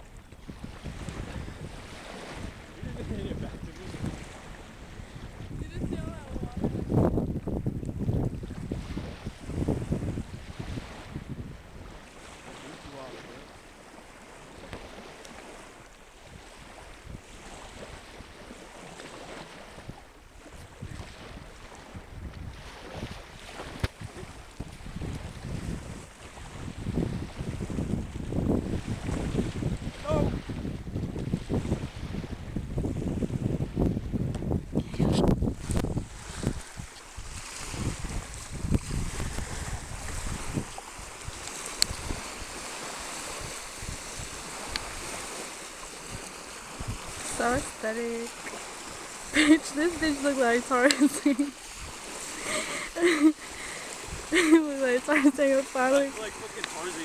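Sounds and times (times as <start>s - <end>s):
wind buffeting microphone: 0.0s - 12.6s, 14.4s - 57.0s
sea water washing: 0.0s - 57.0s
hiss of surf: 35.0s - 57.0s
sharp tick: 41.8s - 42.0s.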